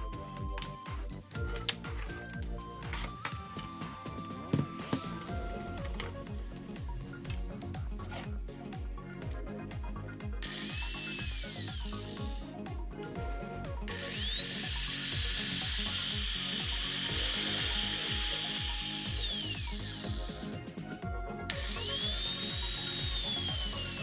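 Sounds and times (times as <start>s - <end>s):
background music with steady beat: 0.0s - 24.0s
electric grinder motor whine: 10.4s - 12.6s, 13.6s - 24.0s.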